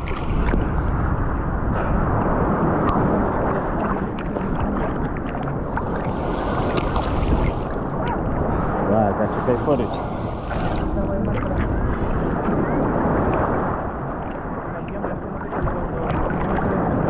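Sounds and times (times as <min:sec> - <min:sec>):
seawater sloshing and splashing: 0:05.0 - 0:08.6, 0:09.2 - 0:11.8.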